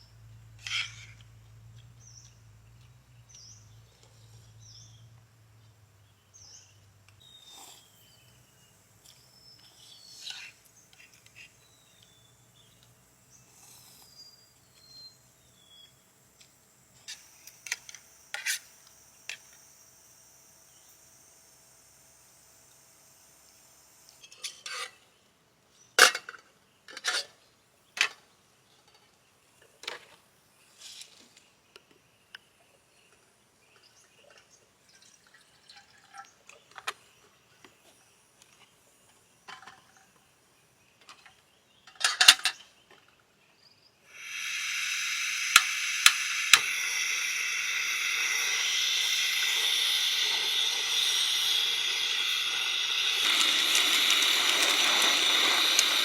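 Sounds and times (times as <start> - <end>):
steady loud hiss: 44.1 - 56.0
clicks: 44.2 - 56.0.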